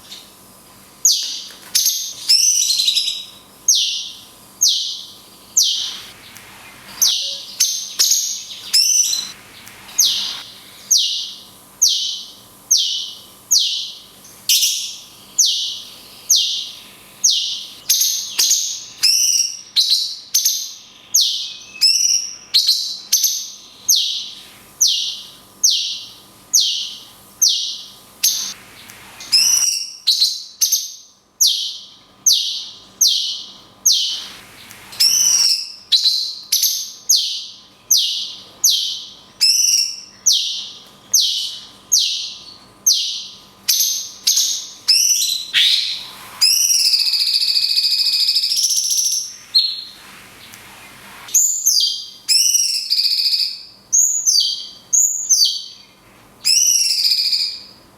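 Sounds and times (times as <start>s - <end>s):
songbird sharp high call: 3.7s - 14.0s, 31.5s - 43.2s, 44.3s - 50.6s.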